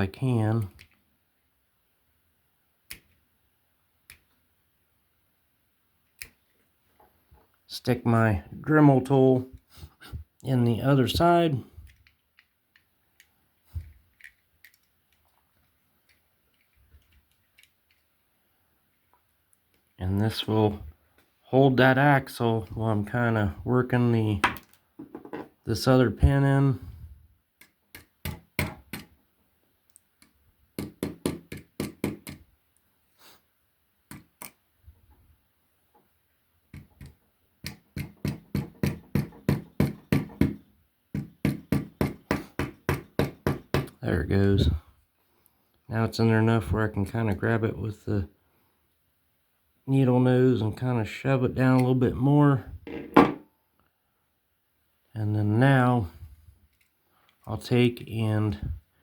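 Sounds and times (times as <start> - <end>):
clicks and taps of handling: 0.6 - 1.0, 6.0 - 7.6, 11.8 - 18.2.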